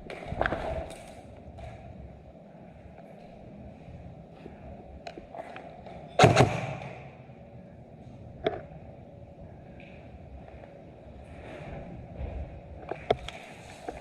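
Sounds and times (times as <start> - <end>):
background noise: 0.0 - 14.0
sharp knocks: 6.2 - 7.1.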